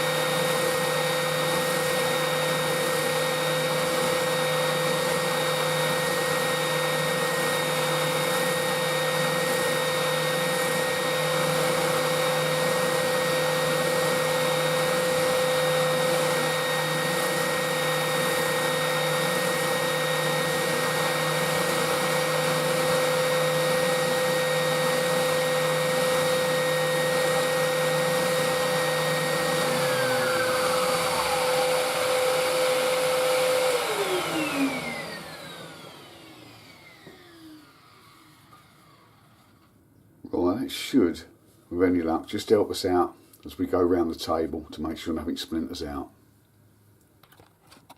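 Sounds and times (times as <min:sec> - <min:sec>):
motor spinning down: 0:00.0 - 0:39.6
power tool motors whining: 0:00.0 - 0:39.7.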